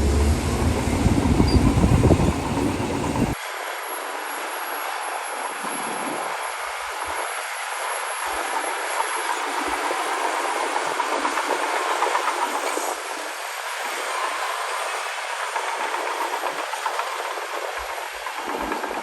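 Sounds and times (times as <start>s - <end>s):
bulldozer tracks clattering: 0.0s - 3.4s.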